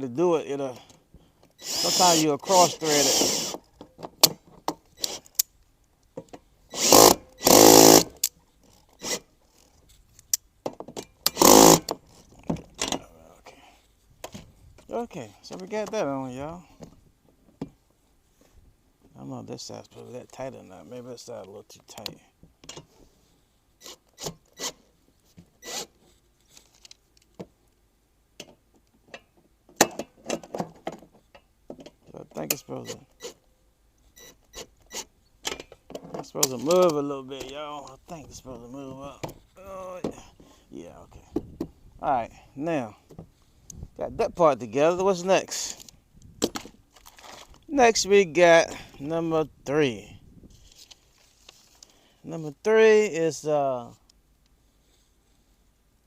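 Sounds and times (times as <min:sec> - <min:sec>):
power drill motor whine: 0:01.6 - 0:02.2, 0:02.8 - 0:03.6, 0:06.7 - 0:08.1, 0:11.3 - 0:11.8, 0:25.6 - 0:25.8
parts clicking and knocking: 0:34.4 - 0:38.0
handling rubs scrapes and knocks: 0:50.5 - 0:51.9.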